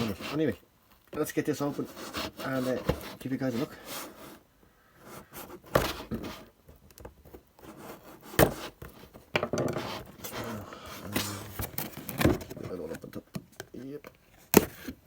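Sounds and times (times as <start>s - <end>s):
cardboard rubbing and scraping: 0.0s - 0.6s, 1.5s - 6.5s, 7.4s - 13.0s.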